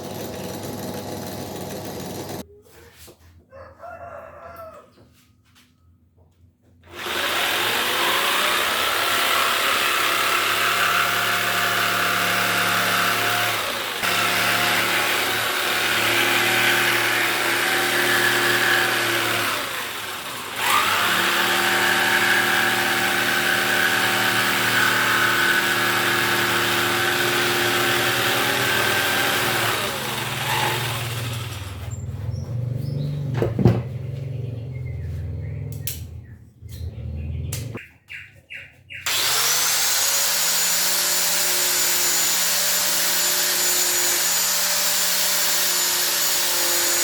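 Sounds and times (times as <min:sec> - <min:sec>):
circular saw motor running: 0:00.0 - 0:02.4, 0:06.9 - 0:32.0, 0:39.1 - 0:47.0.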